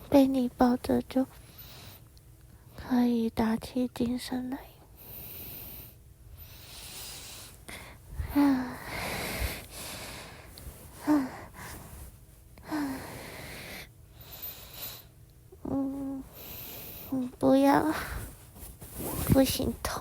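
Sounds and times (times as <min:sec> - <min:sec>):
woman breathing: 0:05.0 - 0:15.2, 0:16.2 - 0:17.2.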